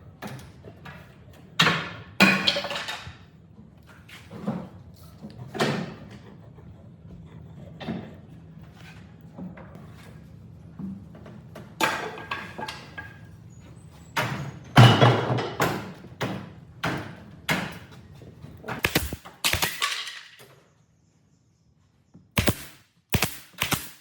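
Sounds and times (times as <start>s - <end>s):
wood being struck: 18.8s - 19.8s.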